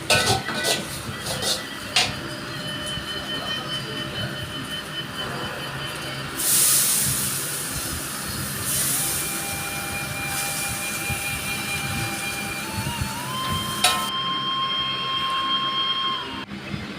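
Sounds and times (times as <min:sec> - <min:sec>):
food sizzling in a wok: 0:06.4 - 0:14.1.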